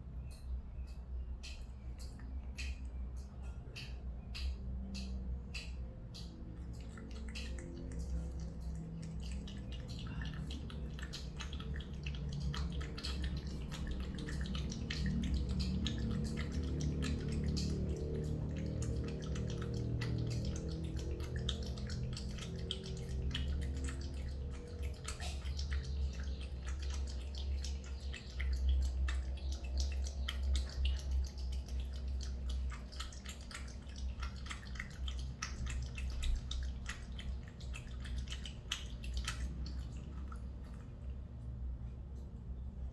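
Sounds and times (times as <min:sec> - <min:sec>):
cat lapping water: 0:01.4 - 0:42.9.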